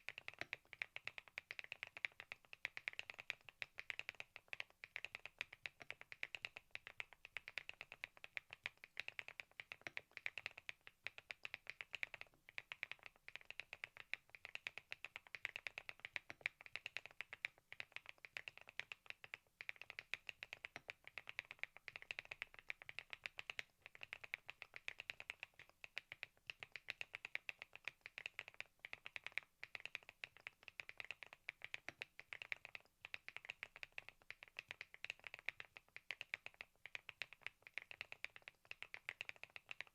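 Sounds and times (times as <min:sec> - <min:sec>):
fast mechanical keyboard typing: 0:00.1 - 0:39.9.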